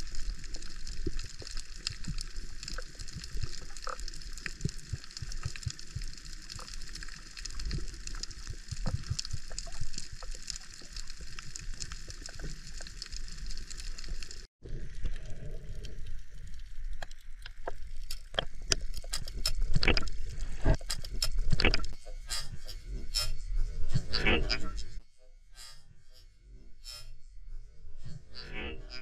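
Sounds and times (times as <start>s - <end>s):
underwater clicks and crackles: 0.0s - 22.5s.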